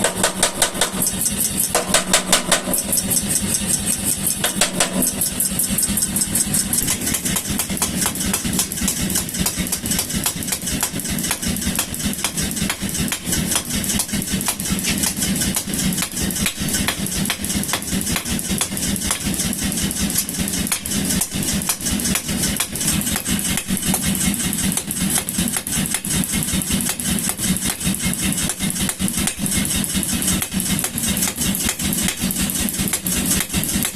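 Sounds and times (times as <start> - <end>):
power hammer striking hot steel: 0.0 - 33.9
motor humming: 0.9 - 10.0.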